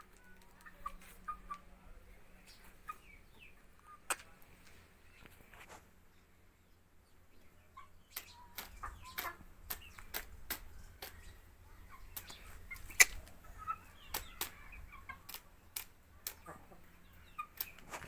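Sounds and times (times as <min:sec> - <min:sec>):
chick making short calls: 0:07.8 - 0:11.3, 0:11.9 - 0:15.5.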